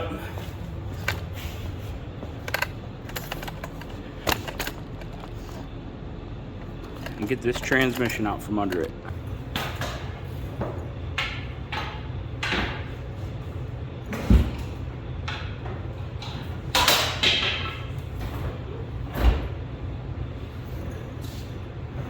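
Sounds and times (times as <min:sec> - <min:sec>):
steady low hum: 0:00.0 - 0:22.0
metal clunks and scraping: 0:00.9 - 0:05.7.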